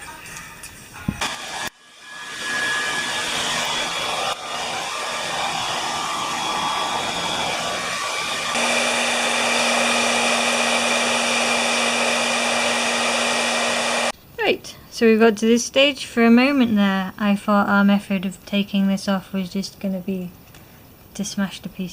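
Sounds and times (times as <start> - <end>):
hair dryer blowing: 1.2 - 14.1.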